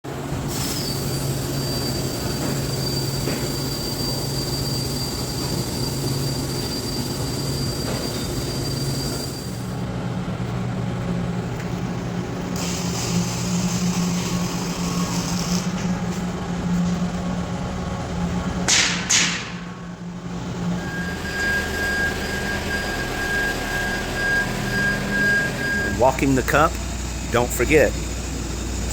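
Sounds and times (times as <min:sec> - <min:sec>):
welding arc buzzing hiss: 0:12.6 - 0:17.0.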